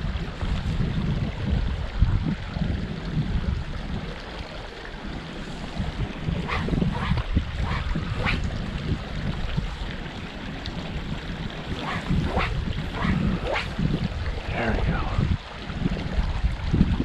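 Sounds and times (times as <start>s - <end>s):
stream flowing: 0.0s - 17.0s
wind buffeting microphone: 0.0s - 17.0s.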